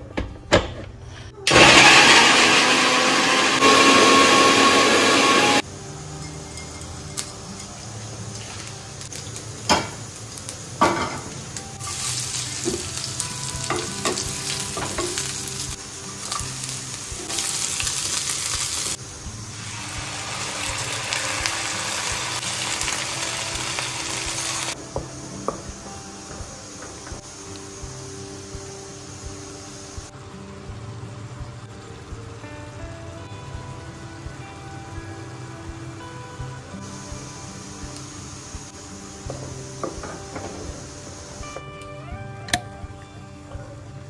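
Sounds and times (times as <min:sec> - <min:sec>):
food sizzling in a pan: 0:01.5 - 0:41.6.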